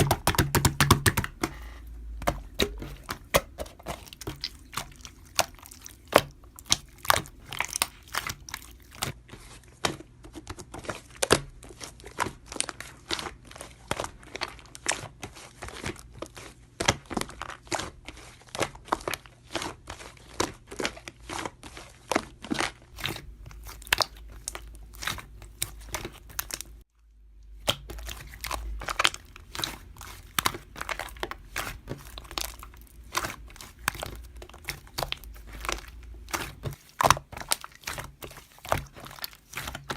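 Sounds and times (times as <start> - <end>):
slime squished by hand: 0.0 - 9.2, 10.6 - 26.8, 27.4 - 39.9.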